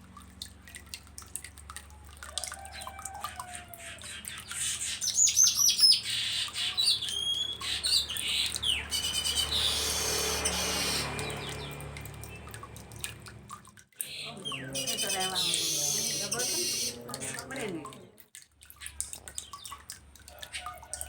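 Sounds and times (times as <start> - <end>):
bird chirping and whistling: 6.7 - 11.4.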